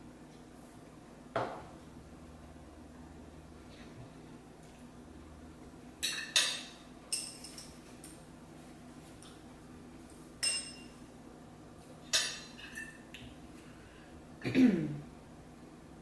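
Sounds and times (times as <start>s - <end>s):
tableware clinking: 6.0s - 8.2s, 10.4s - 11.0s, 12.1s - 13.1s.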